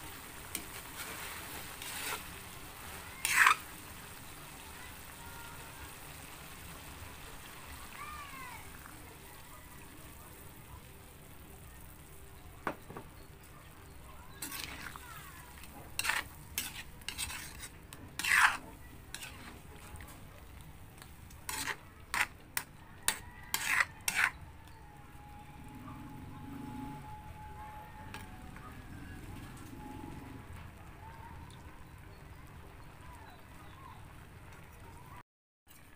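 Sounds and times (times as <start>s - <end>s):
faint sizzling: 0.0s - 35.9s
utensil scraping a pan: 0.3s - 3.8s, 14.3s - 20.2s, 21.0s - 24.8s.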